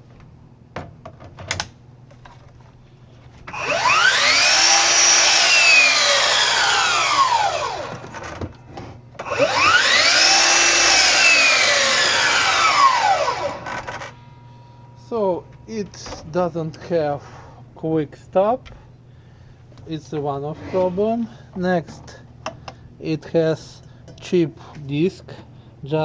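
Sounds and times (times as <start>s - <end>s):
saw blade coasting down: 3.5s - 8.0s, 9.2s - 14.2s
miter saw motor spinning up: 3.5s - 8.3s, 9.2s - 14.2s.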